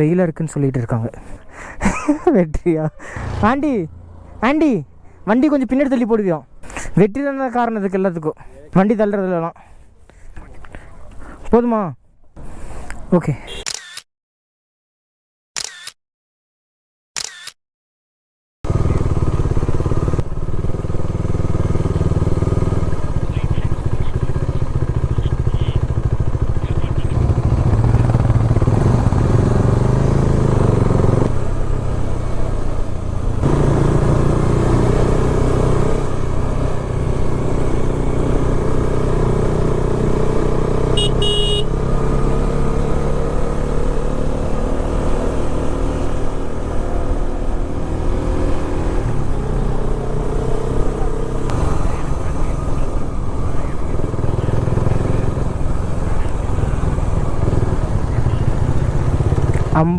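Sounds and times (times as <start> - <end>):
motorcycle engine running: 3.0 - 6.0, 18.7 - 59.9
short high beep: 41.0 - 41.7.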